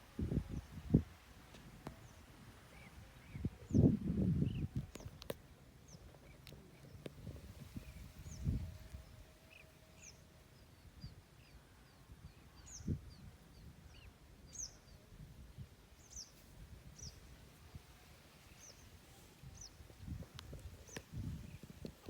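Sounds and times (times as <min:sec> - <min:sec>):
birds chirping: 0:05.8 - 0:11.6, 0:16.0 - 0:22.0.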